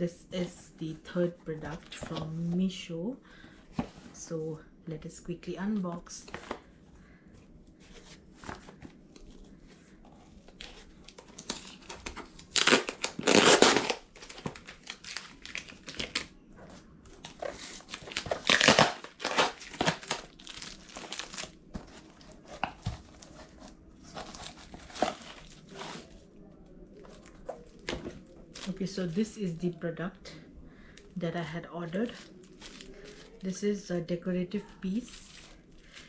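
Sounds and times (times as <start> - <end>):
packaging tearing and crinkling: 10.5 - 16.3, 17.2 - 26.1.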